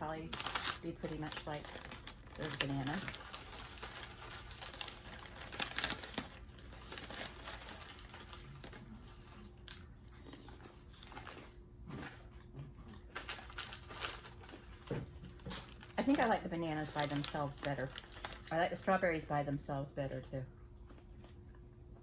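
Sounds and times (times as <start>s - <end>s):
plastic packet crinkling: 0.0s - 11.5s, 13.1s - 18.6s
crunching and chewing: 0.4s - 16.3s.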